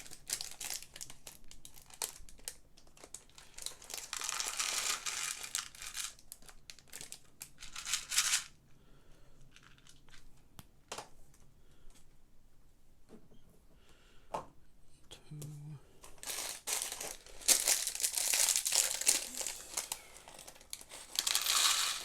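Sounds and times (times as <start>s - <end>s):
plastic bag crinkling and tearing: 0.0s - 8.5s, 16.1s - 22.0s.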